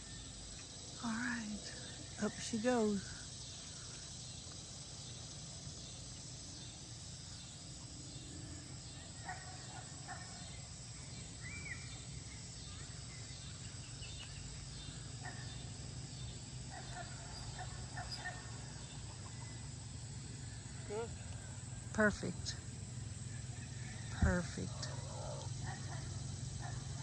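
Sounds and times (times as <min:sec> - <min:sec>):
insect drone: 0:00.0 - 0:27.0
low steady rumble: 0:17.8 - 0:27.0.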